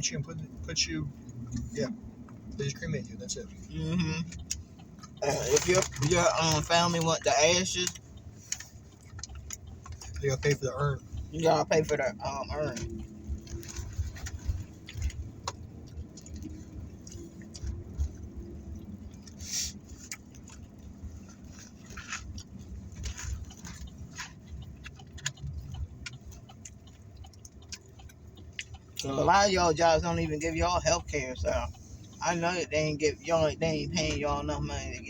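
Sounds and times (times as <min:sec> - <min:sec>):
low rumble inside a car: 0:00.0 - 0:35.0
chewing and eating: 0:01.1 - 0:32.3
small clicks and rustles: 0:04.2 - 0:11.3, 0:12.6 - 0:29.5.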